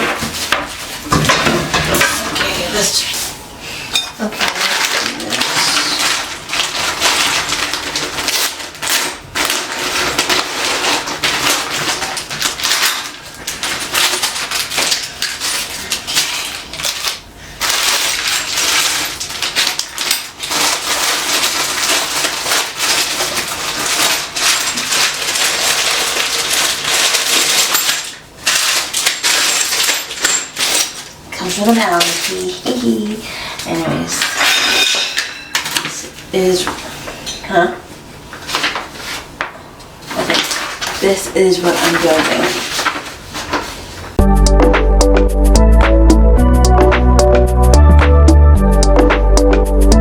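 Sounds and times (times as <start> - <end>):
wrapping crinkling and rustling: 4.2 - 44.2
parts clicking and clinking: 5.8 - 31.1.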